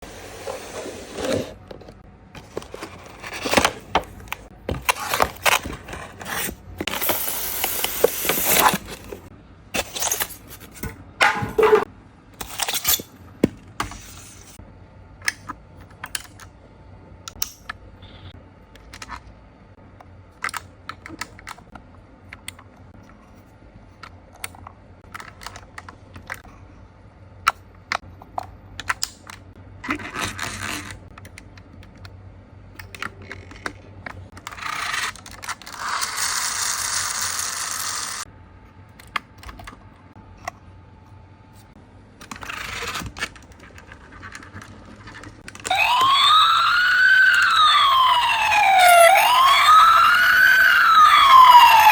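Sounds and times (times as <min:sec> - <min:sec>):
electronic fire truck siren: 0:45.6 - 0:51.9.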